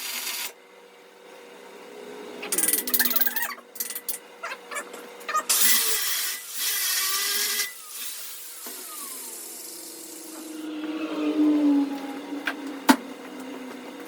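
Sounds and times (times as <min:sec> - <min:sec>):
angle grinder running: 0:05.5 - 0:14.0.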